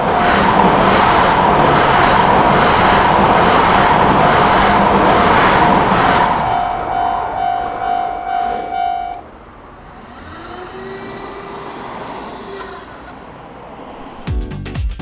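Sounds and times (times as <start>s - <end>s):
crossing warning bell ringing: 0.0s - 9.4s
train passing at speed: 0.0s - 14.3s.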